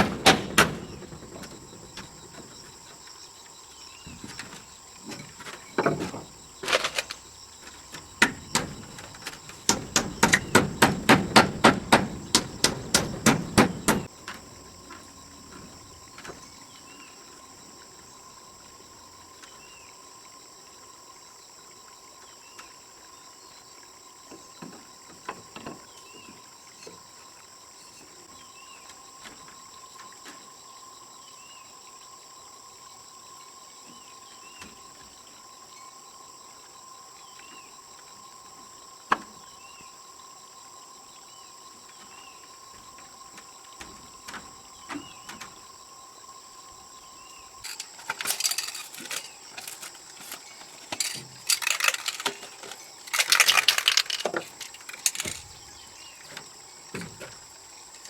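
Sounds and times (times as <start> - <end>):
scraping and rattling: 0.0 - 2.8, 4.1 - 15.9, 47.6 - 55.9
insect chirring: 0.0 - 58.0.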